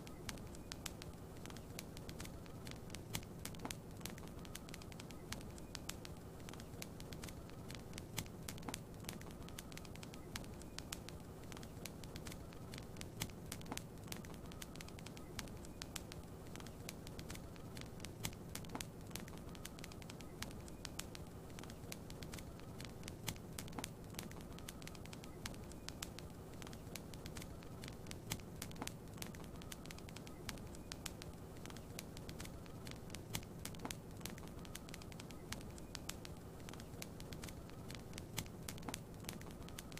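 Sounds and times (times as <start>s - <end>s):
wood fire crackling: 0.0s - 39.9s
low fire rumble: 0.2s - 39.9s.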